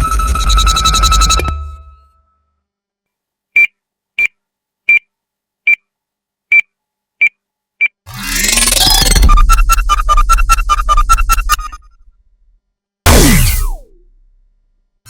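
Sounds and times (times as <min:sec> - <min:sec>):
high-pitched electronic beeps: 0:03.6 - 0:05.1.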